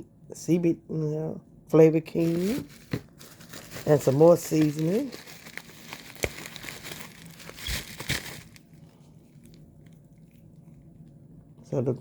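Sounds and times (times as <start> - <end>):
packaging crinkling and rustling: 2.1 - 10.4.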